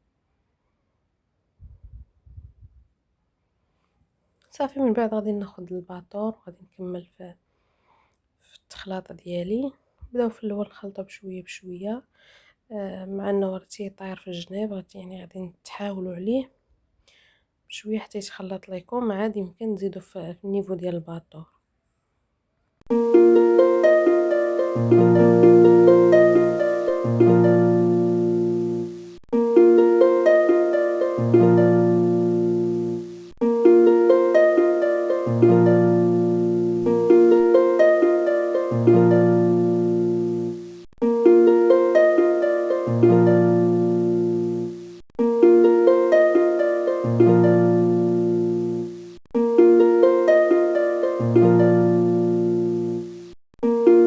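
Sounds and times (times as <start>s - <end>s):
background music melody with bass: 22.9s - 54.0s.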